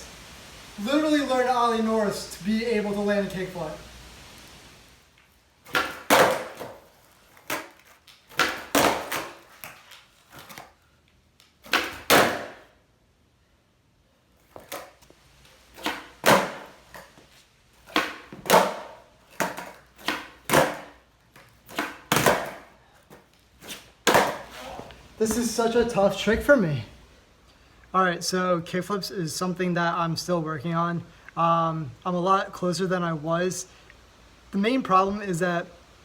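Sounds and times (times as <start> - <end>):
skateboard popping and slapping: 5.6 - 10.8, 11.6 - 12.7, 14.5 - 15.0, 15.7 - 24.6.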